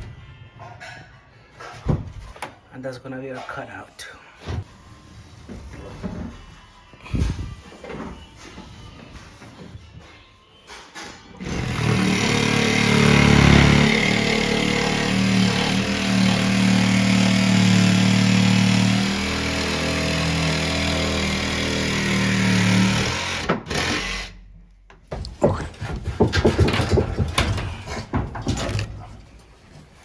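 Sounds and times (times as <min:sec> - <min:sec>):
power saw cutting plywood: 0:11.4 - 0:24.4.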